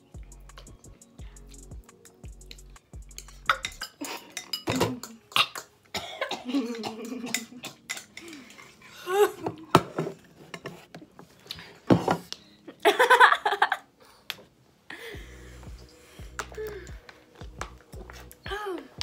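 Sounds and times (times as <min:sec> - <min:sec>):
utensils clinking against bowls: 0:03.4 - 0:05.7, 0:06.5 - 0:08.8
person coughing: 0:04.0 - 0:07.8.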